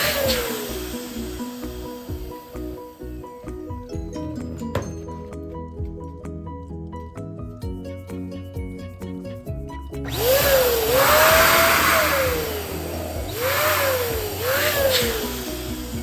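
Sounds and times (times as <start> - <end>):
electric balloon pump whining: 0.0 - 5.2, 10.0 - 16.0
background music: 0.0 - 16.0.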